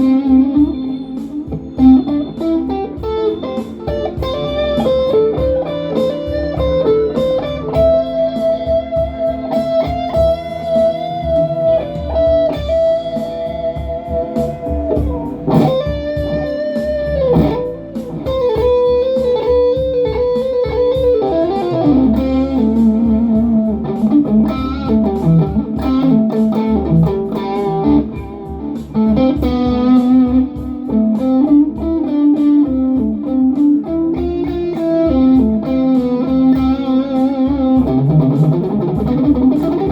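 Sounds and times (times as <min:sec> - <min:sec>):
electric guitar slow lead: 0:00.0 - 0:39.9.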